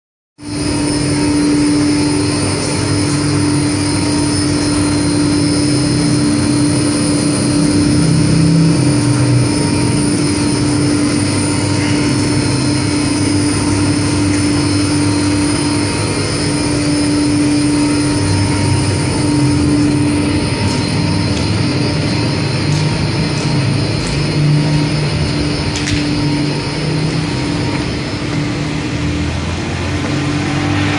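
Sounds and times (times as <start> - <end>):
laundry machine running: 0.4 - 30.9.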